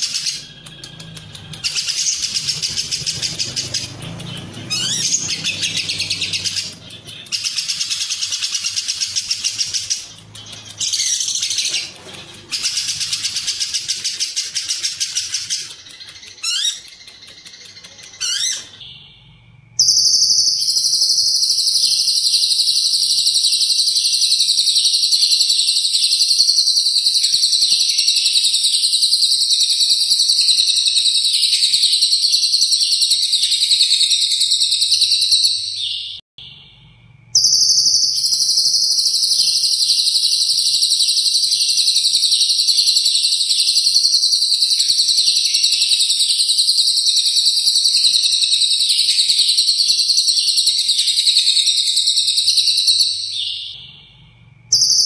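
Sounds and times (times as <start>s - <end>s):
lovebird trilling: 0.0s - 19.1s.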